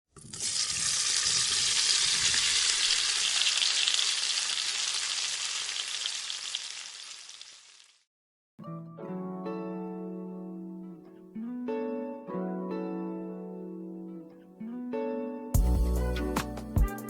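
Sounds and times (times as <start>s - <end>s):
food sizzling in oil: 0.2s - 8.0s.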